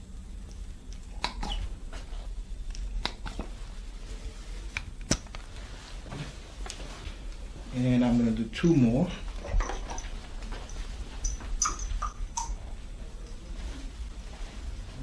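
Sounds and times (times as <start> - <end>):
low steady hum: 0.0 - 15.0
suction cups clicking and tapping: 9.4 - 12.6.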